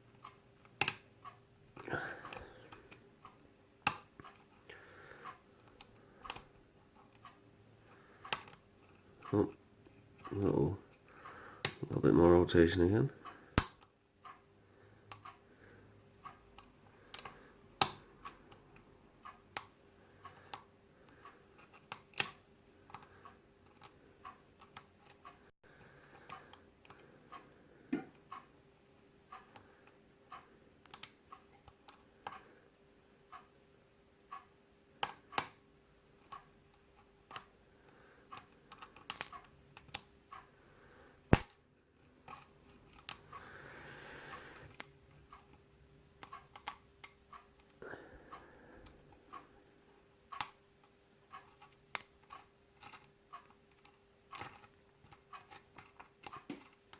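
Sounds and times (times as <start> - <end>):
lock pick metallic clicks: 21.8 - 23.0.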